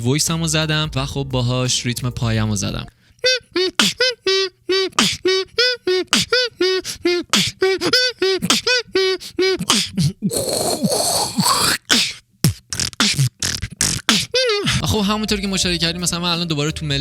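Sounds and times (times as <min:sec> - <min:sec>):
beatboxing falsetto siren notes: 0:03.2 - 0:15.3
mouth percussion hits: 0:03.6 - 0:04.1, 0:04.9 - 0:05.3, 0:06.1 - 0:06.4, 0:07.3 - 0:08.8, 0:09.6 - 0:15.0.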